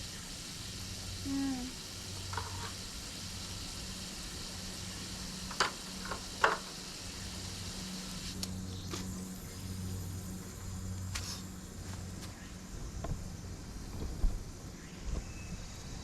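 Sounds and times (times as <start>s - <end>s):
water spray hissing: 0.0s - 11.6s
pressure washer running: 0.0s - 12.0s.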